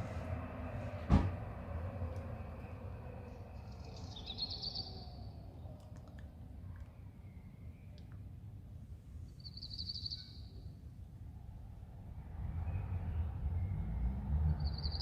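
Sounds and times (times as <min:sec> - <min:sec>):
passing traffic rumble: 0:00.0 - 0:06.6, 0:11.2 - 0:15.0.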